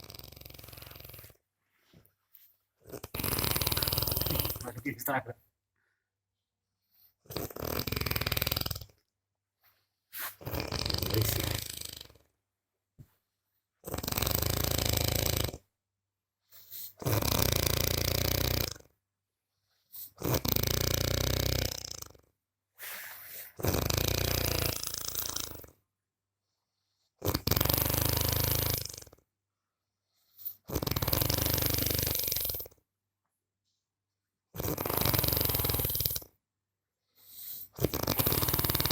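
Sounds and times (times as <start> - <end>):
person snoring: 0.0 - 1.4, 2.8 - 5.2, 7.3 - 9.0, 10.4 - 12.3, 13.8 - 15.6, 16.9 - 18.9, 20.0 - 25.7, 30.4 - 32.7, 34.6 - 36.3, 37.4 - 38.9.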